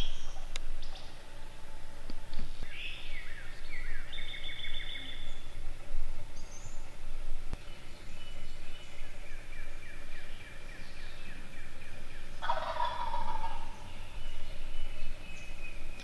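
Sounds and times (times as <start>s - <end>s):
birds singing faintly: 0.0s - 16.0s
turkey gobbling: 11.9s - 14.4s.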